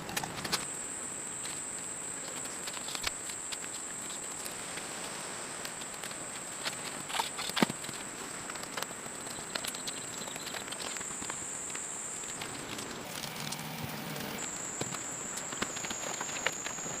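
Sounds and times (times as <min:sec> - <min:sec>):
insects droning: 0:00.0 - 0:17.0
small clicks and rustles: 0:02.2 - 0:13.7.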